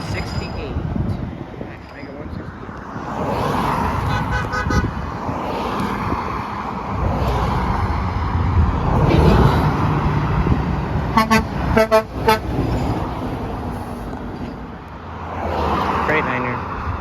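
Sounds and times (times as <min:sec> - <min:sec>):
road traffic rumble: 0:00.0 - 0:17.0
vehicle horn short beeps: 0:11.2 - 0:12.4.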